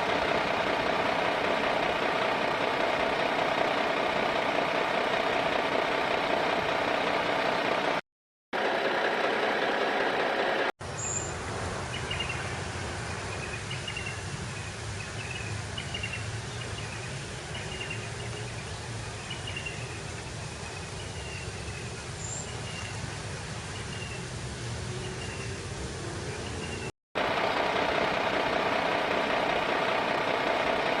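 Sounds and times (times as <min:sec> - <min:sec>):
small motor running: 0:00.0 - 0:08.0, 0:27.2 - 0:31.0.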